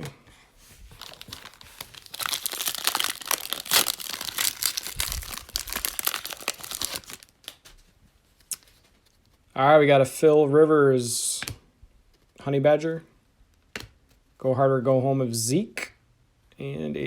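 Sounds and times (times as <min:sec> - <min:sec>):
wrapper tearing and crinkling: 0:00.9 - 0:07.7.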